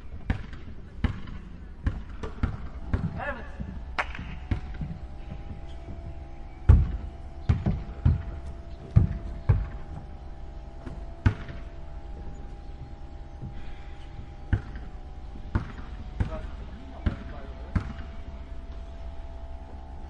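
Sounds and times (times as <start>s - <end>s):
faint hum: 0.0s - 20.0s
basketball bouncing on court floor: 0.2s - 6.0s, 6.7s - 8.3s, 9.0s - 9.8s, 10.8s - 11.6s, 14.5s - 14.9s, 15.5s - 16.4s, 17.0s - 18.1s.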